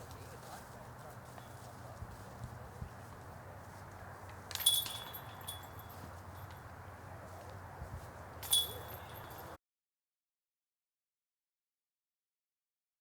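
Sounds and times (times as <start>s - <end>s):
disc golf basket chains ringing: 4.4s - 6.7s, 8.4s - 9.6s.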